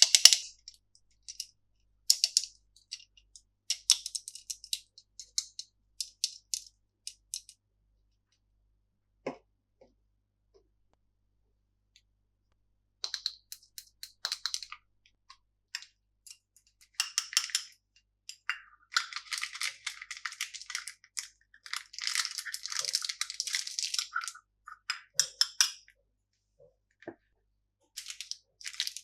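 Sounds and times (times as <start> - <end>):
candy packaging crackling: 18.8 - 25.5, 28.0 - 29.0.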